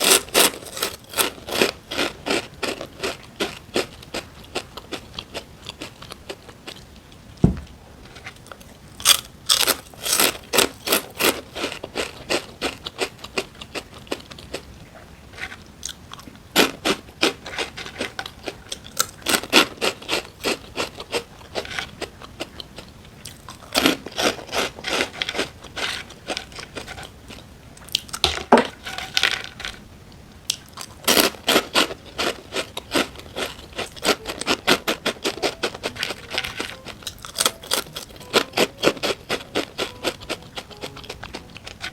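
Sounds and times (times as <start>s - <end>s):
chewing crisp food: 0.0s - 7.2s, 8.0s - 41.9s
low thump: 7.4s - 7.7s.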